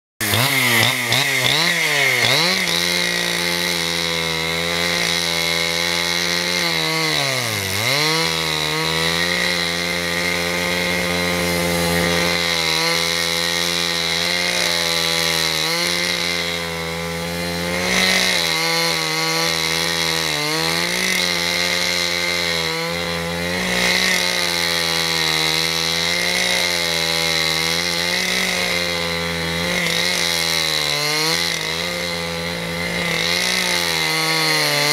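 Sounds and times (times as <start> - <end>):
chainsaw sawing wood: 0.2 - 34.9.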